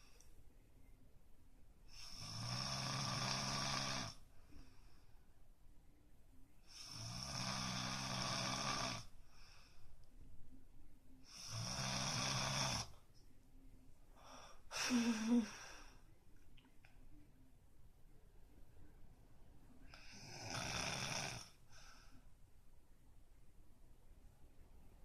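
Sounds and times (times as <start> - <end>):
soft breaths: 0.0 - 22.8
person snoring: 1.9 - 4.2, 6.6 - 9.1, 11.3 - 13.0, 14.7 - 15.9, 19.9 - 21.6.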